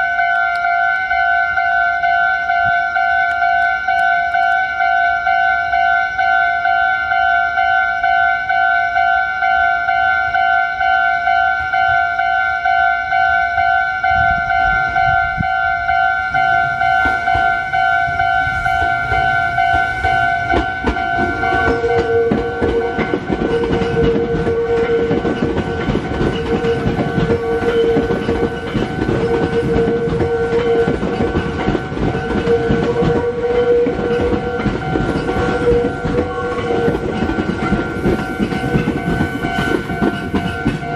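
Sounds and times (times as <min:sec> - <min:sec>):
level crossing bell dinging: 0:00.0 - 0:40.9
train rumble: 0:00.0 - 0:40.9
pulsing tone: 0:16.2 - 0:40.9
wheels clattering over rail joints: 0:16.6 - 0:40.9.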